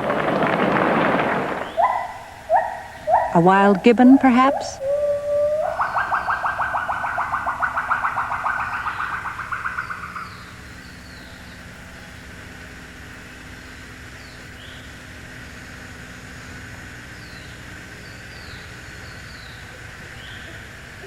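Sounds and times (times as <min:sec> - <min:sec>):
faint bird chirps: 0:01.6 - 0:12.2, 0:17.1 - 0:21.0
rapidly pulsing trill: 0:05.6 - 0:11.9.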